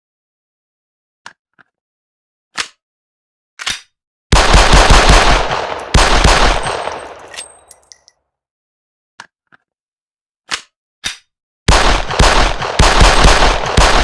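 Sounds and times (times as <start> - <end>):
pistol rapid gunfire: 4.3 - 7.3, 11.7 - 14.0.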